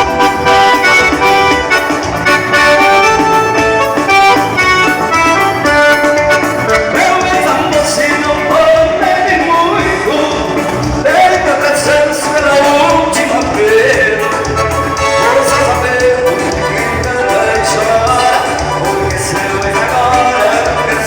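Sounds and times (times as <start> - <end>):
live band music: 0.0 - 21.0
person singing: 6.0 - 21.0.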